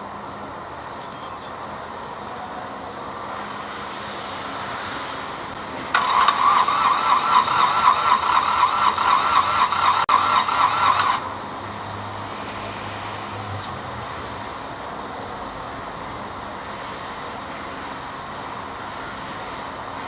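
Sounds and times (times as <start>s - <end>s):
starter motor cranking diesel engine: 5.9s - 11.4s.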